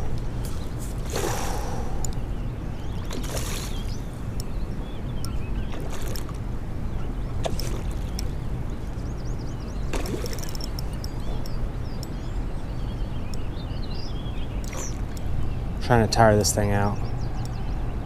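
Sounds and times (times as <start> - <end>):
river water flowing: 0.0 - 4.4.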